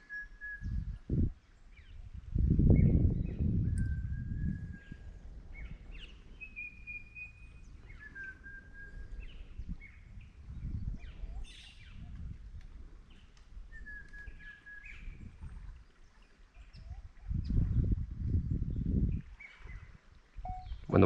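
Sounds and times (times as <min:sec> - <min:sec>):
bird whistling calls: 0:00.0 - 0:00.9, 0:02.8 - 0:10.0, 0:13.7 - 0:15.2, 0:19.4 - 0:20.9.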